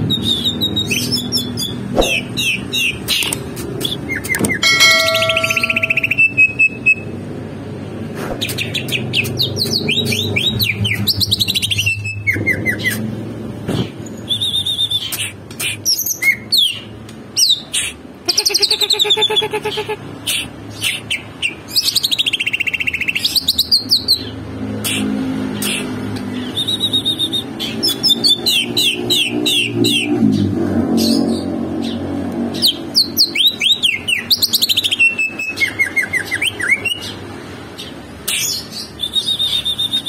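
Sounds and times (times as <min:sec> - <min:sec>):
birds chirping and whistling: 0:00.0 - 0:07.1, 0:08.4 - 0:13.1, 0:13.8 - 0:17.7, 0:25.6 - 0:32.0, 0:32.6 - 0:37.2, 0:37.8 - 0:40.0.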